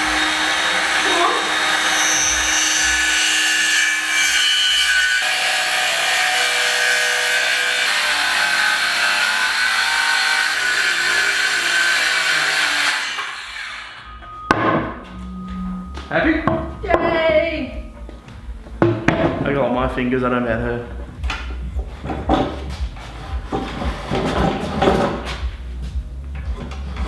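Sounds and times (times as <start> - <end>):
circular saw cutting wood: 0.0 - 14.2, 21.5 - 25.5.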